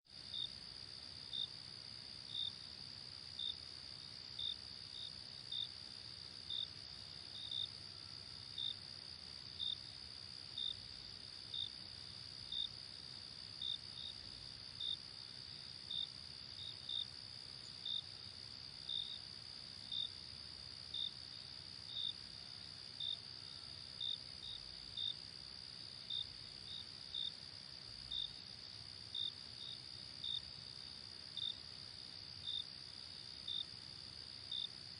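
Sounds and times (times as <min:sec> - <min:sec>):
cricket chirp: 0:00.1 - 0:34.9.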